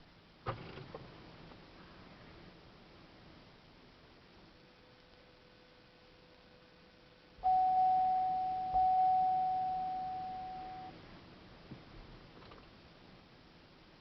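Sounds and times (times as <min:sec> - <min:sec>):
car dashboard warning chime: 0:07.4 - 0:11.0.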